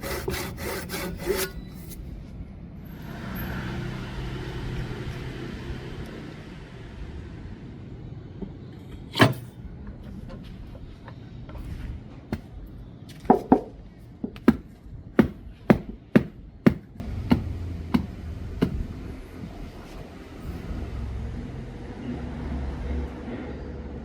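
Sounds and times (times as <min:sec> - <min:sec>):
low steady rumble: 0:13.8 - 0:22.2
sharp knocks: 0:14.3 - 0:18.9.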